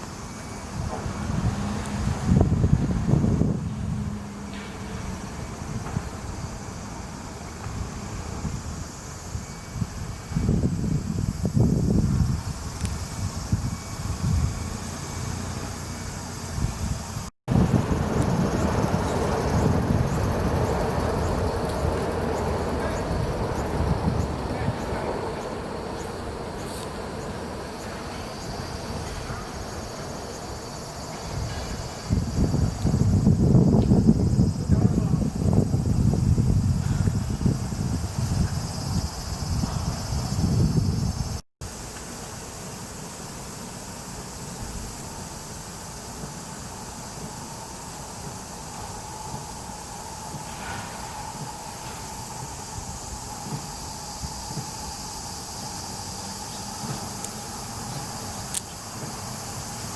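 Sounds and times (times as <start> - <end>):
wind buffeting microphone: 0.0 - 15.5, 16.5 - 41.4
high hiss: 0.0 - 59.9
high-pitched insect buzz: 0.0 - 59.9.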